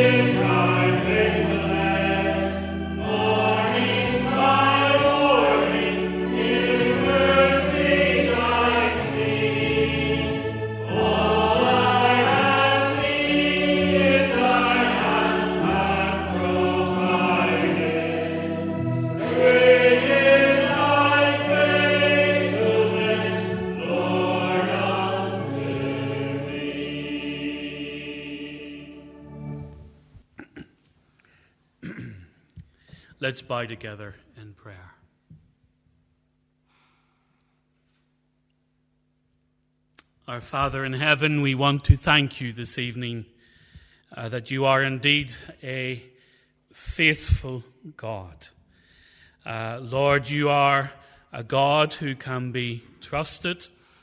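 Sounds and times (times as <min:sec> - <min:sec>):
congregation singing a hymn: 0:00.0 - 0:29.9, 0:49.5 - 0:53.6
held instrumental chords: 0:00.0 - 0:30.2.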